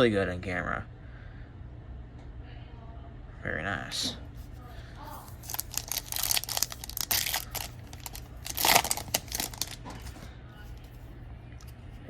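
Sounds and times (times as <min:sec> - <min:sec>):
plastic wrapper crinkling and tearing: 0:05.2 - 0:10.3.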